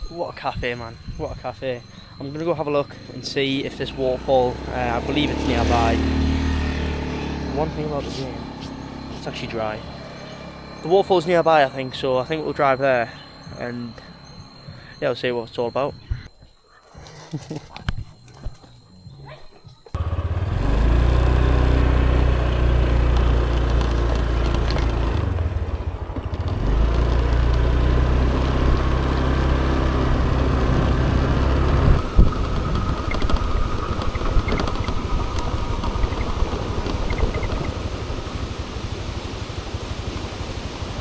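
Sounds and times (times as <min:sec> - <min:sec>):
moped engine running: 0:00.0 - 0:15.0, 0:18.5 - 0:41.0.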